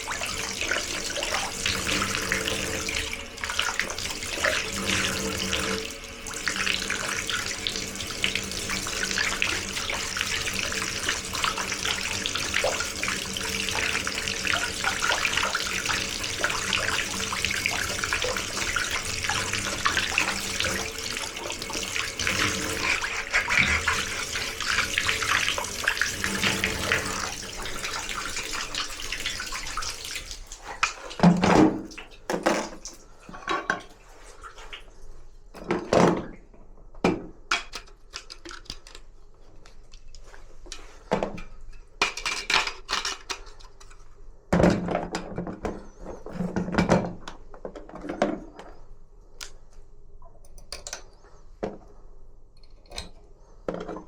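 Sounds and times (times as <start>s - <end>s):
tap water spattering into basin: 0.0s - 34.9s.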